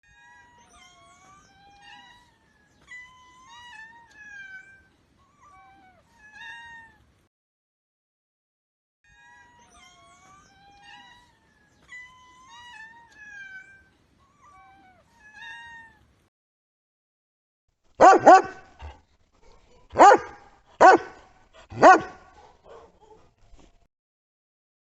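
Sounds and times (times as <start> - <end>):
cat meowing: 9.1 - 16.0.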